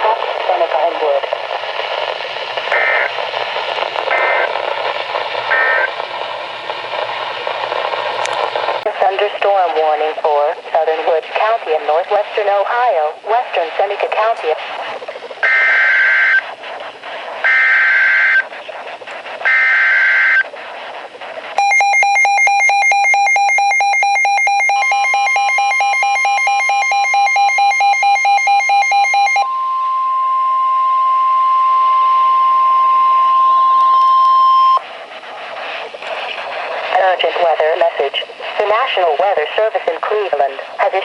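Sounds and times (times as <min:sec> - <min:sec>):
rapid pulsed electronic alarm beeping: 0:02.7 - 0:03.1, 0:04.1 - 0:04.5, 0:05.5 - 0:05.9, 0:15.4 - 0:16.4, 0:17.4 - 0:18.5, 0:19.4 - 0:20.5, 0:21.6 - 0:34.8
steady warning alarm tone: 0:02.7 - 0:03.2, 0:04.1 - 0:04.5, 0:05.5 - 0:06.0, 0:15.4 - 0:16.6, 0:17.4 - 0:18.5, 0:19.4 - 0:20.5, 0:21.6 - 0:34.9.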